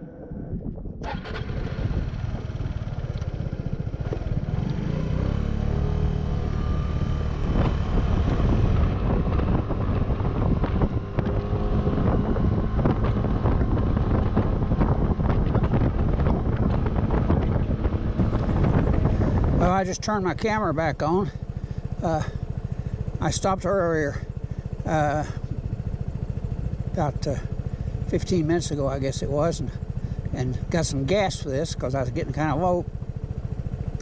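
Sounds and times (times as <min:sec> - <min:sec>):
wind buffeting microphone: 0:00.0 - 0:34.0
motor scooter engine riding away: 0:01.0 - 0:15.6, 0:16.2 - 0:19.7.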